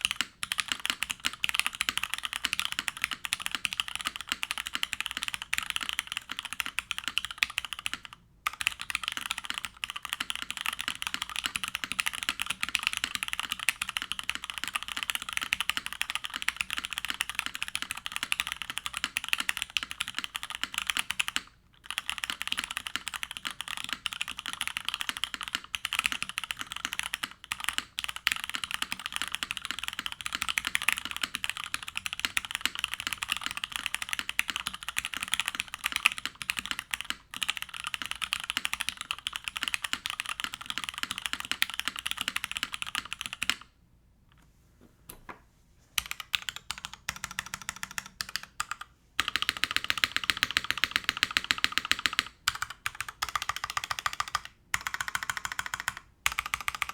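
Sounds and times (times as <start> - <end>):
mechanical keyboard keystroke clacks: 46.0 - 56.9.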